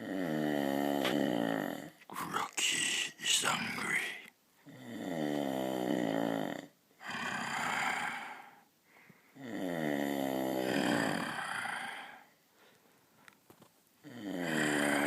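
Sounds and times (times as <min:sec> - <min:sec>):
person snoring: 0:00.0 - 0:08.7, 0:09.3 - 0:12.4, 0:14.0 - 0:15.0.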